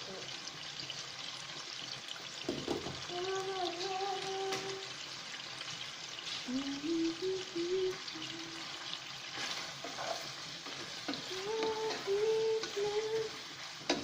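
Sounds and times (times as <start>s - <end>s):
meat sizzling in a pan: 0.0s - 14.0s.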